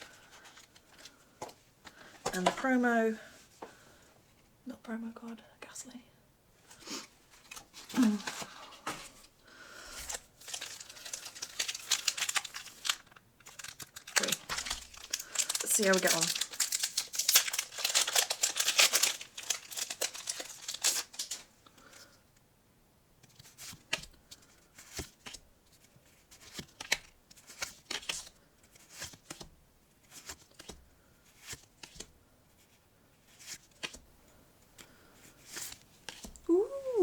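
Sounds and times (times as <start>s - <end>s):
foil pack crinkling and tearing: 9.9s - 21.6s.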